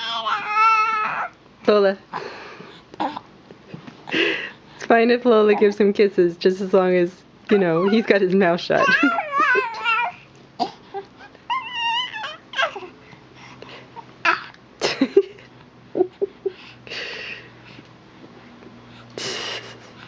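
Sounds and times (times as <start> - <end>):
baby squealing and whimpering: 0.0 - 1.4, 7.5 - 8.2, 8.8 - 10.2, 10.9 - 13.0.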